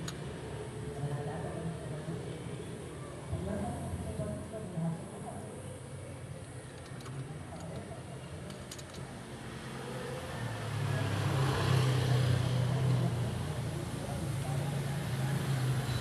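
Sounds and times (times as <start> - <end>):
vehicle engine hum: 8.5 - 16.0.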